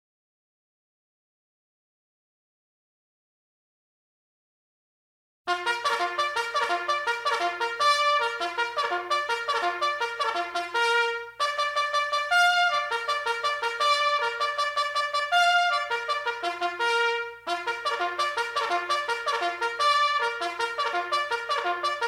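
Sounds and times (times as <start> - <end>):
trumpet fast run of notes: 5.5 - 22.0.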